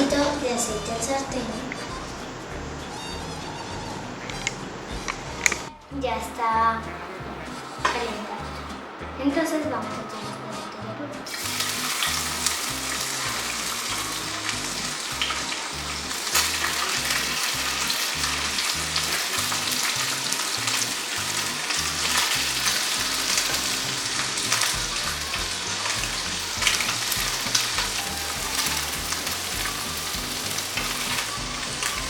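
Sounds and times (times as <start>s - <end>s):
octopus sizzling in hot oil: 11.3s - 32.0s.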